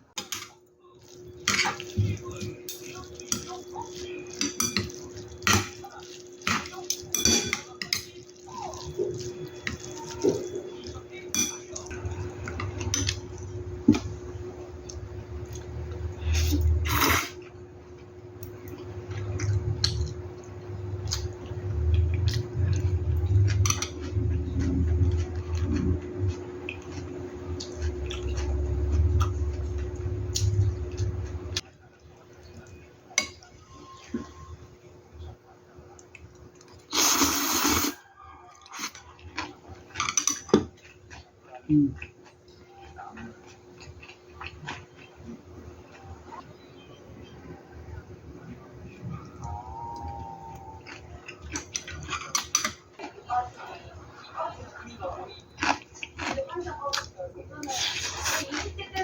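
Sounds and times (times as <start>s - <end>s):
steady hum: 0.0s - 38.0s
dishes and utensils clattering: 1.4s - 5.8s, 6.4s - 10.6s, 11.3s - 13.2s, 39.9s - 40.8s, 51.5s - 53.2s.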